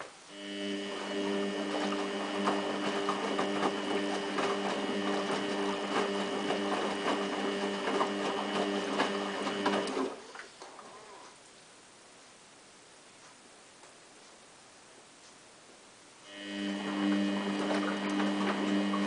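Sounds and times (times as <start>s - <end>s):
washing machine hum: 0.1s - 11.2s, 16.2s - 19.0s.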